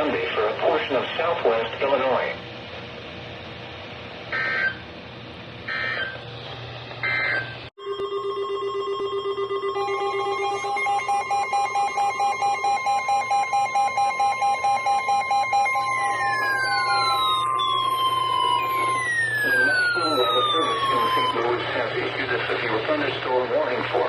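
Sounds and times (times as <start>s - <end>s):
radio alarms beeping rapidly: 4.3s - 4.8s, 5.7s - 6.2s, 7.0s - 21.5s
steady alert tone: 7.2s - 21.4s.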